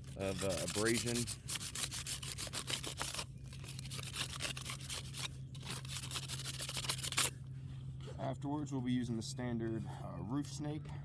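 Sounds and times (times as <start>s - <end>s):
metal tool scraping roof shingles: 0.0s - 7.3s.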